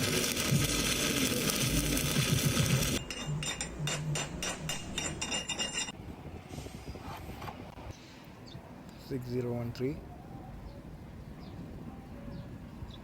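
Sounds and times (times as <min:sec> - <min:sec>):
welding arc crackle and hiss: 0:00.0 - 0:03.0
sharp metallic clinks: 0:03.0 - 0:06.0.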